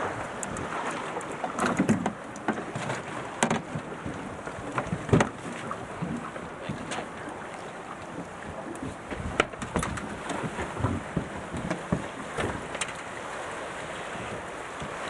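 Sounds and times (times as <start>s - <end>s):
water noise: 0.0s - 15.0s
wind noise: 8.1s - 12.8s.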